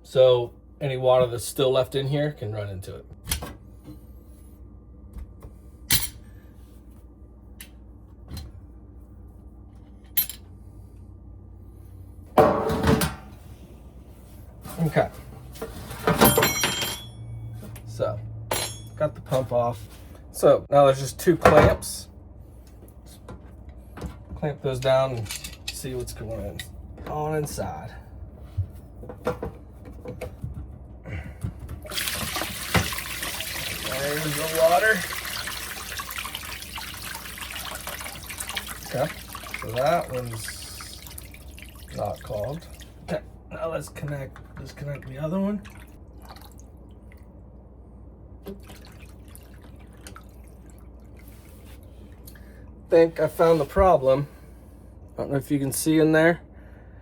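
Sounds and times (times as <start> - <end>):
water pouring into a pan: 31.9 - 43.0.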